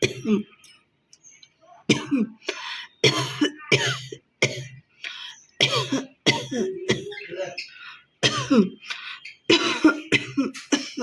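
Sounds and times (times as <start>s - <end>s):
woman coughing: 0.0s - 0.6s, 1.9s - 2.4s, 3.0s - 4.8s, 5.6s - 7.3s, 8.2s - 8.8s, 9.5s - 11.0s
woman clearing her throat: 1.9s - 2.4s, 3.0s - 4.7s, 5.6s - 7.2s.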